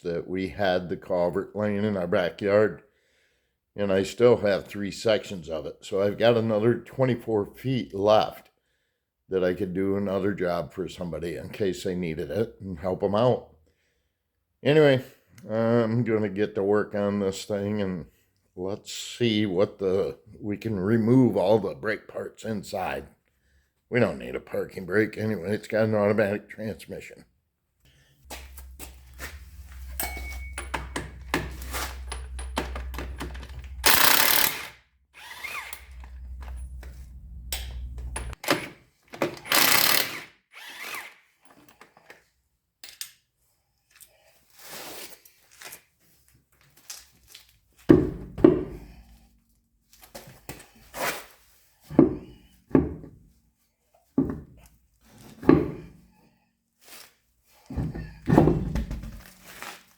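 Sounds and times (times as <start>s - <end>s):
low steady hum: 28.2s - 34.6s, 35.6s - 38.4s
metallic knocks and clunks: 28.3s - 34.1s, 35.7s - 39.4s, 57.7s - 59.4s
power tool bursts: 30.8s - 37.0s, 37.6s - 41.2s.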